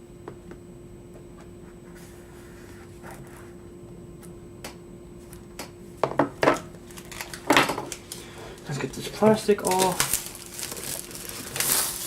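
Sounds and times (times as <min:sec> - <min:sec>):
steady low hum: 0:00.0 - 0:12.0
packaging rustling: 0:06.7 - 0:12.0.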